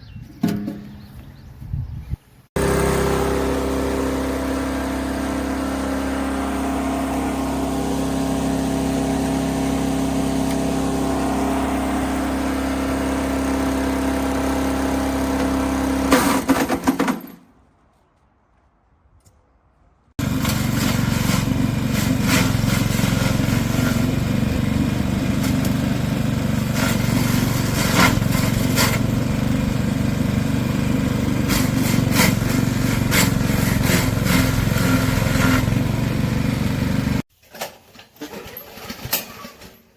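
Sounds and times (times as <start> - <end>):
wood chipper engine running: 2.6 - 17.4, 20.2 - 37.2.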